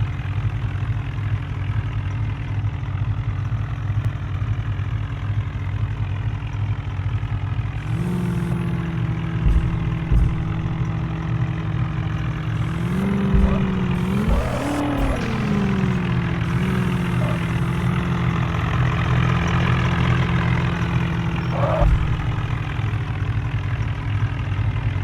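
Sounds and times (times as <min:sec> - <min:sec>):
vehicle engine revving: 0:07.4 - 0:25.0
dull low thuds: 0:07.8 - 0:11.7, 0:12.6 - 0:19.0, 0:20.2 - 0:23.1.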